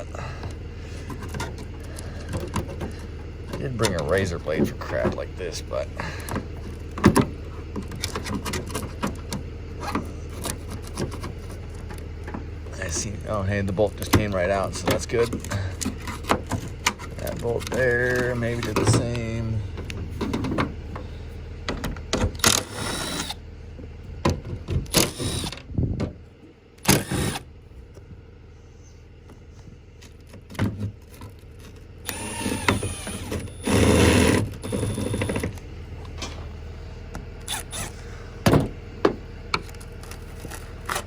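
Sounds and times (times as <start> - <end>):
hand tools clanking on metal: 0.0 - 20.6.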